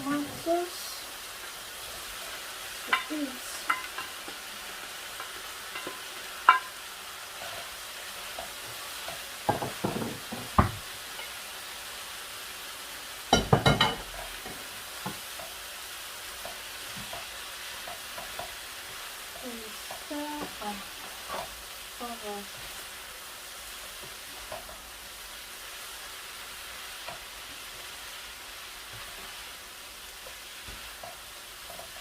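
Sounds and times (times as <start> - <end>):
vegetables sizzling in oil: 0.0 - 32.0
utensil knocking against pan: 9.5 - 10.8, 13.3 - 14.0.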